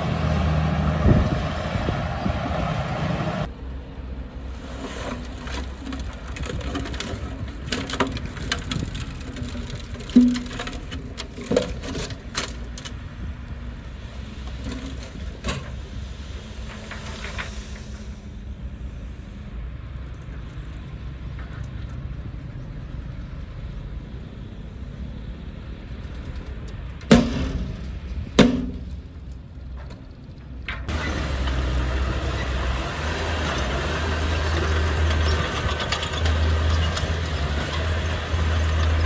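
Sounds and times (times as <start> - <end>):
heavy diesel machine running: 0.0 - 12.8, 30.9 - 39.0.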